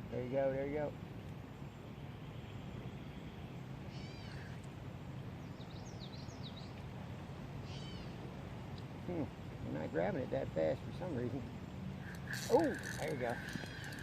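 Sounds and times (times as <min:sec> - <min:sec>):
wind: 0:00.0 - 0:14.0
bird calls: 0:02.0 - 0:04.6, 0:07.6 - 0:08.2, 0:11.9 - 0:14.0
stream flowing: 0:11.4 - 0:14.0.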